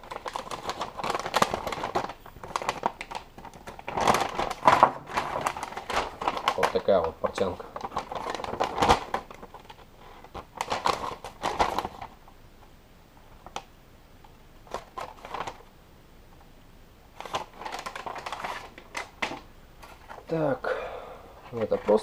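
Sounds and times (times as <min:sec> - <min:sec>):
paper rustling and crinkling: 0:00.0 - 0:12.2, 0:14.6 - 0:15.7, 0:17.1 - 0:20.4, 0:21.5 - 0:22.0.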